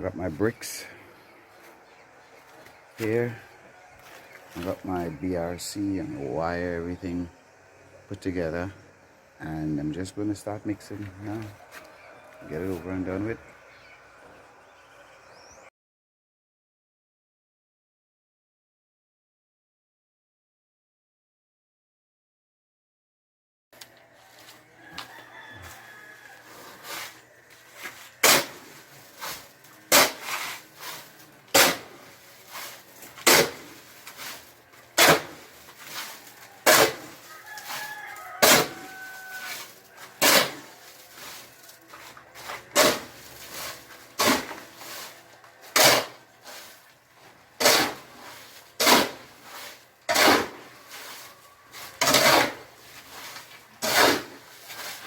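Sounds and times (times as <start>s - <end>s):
faint rooster crowing: 11.2s - 15.2s, 24.0s - 27.6s, 35.9s - 41.6s, 50.6s - 52.0s
shovel scraping concrete: 25.7s - 55.0s.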